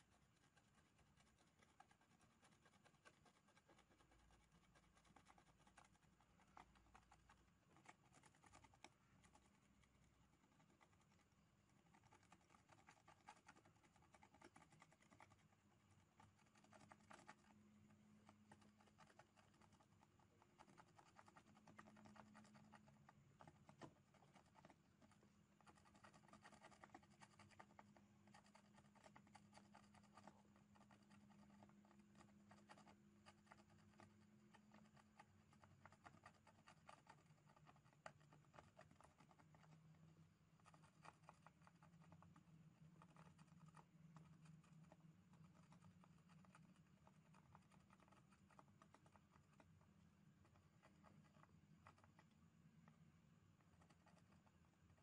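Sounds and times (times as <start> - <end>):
faint steady hum: 0.0 - 55.0.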